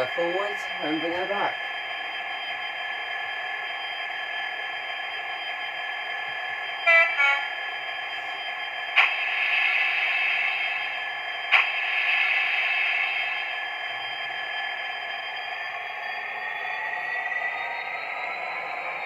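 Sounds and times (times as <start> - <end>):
short horn toots: 6.9 - 7.5
click: 11.5 - 11.8.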